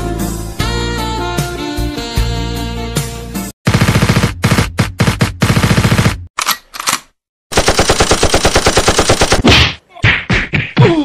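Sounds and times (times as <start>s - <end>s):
machine-gun fire bursts: 3.7s - 6.2s, 7.5s - 9.5s.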